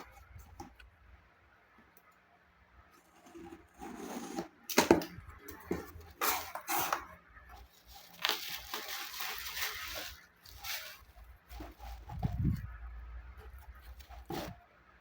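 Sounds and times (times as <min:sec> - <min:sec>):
packaging crinkling: 0:05.6 - 0:12.7, 0:13.4 - 0:14.6.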